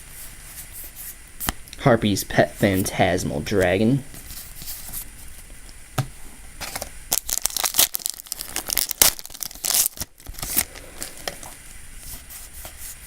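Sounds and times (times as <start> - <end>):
foil pack ripping and crinkling: 6.6 - 12.9.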